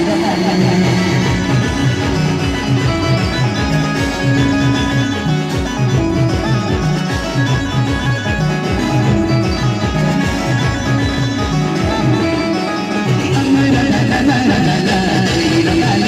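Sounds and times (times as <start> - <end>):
driving bass beat: 0.0 - 16.0
plucked-string melody: 0.0 - 16.0.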